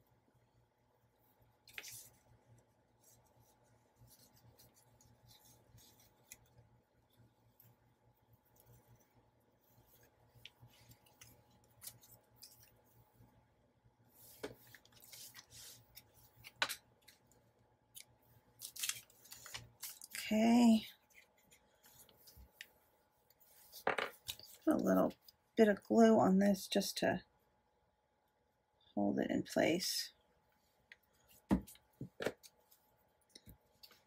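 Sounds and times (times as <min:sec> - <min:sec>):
paper snips and rustles: 0:18.0 - 0:20.2.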